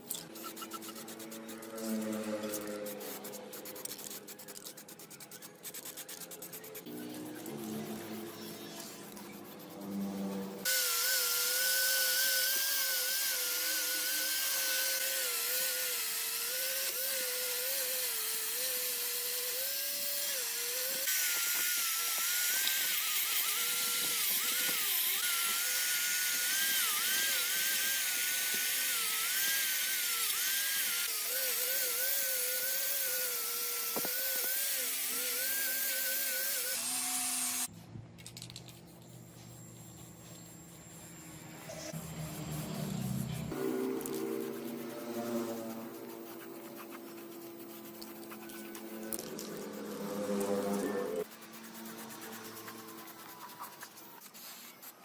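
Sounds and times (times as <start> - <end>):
power tool whining: 6.8 - 37.7, 39.3 - 51.3.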